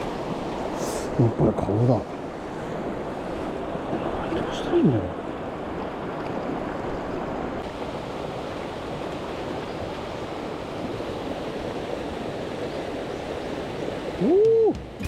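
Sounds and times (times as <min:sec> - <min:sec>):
stream rushing over rocks: 0:07.6 - 0:15.0.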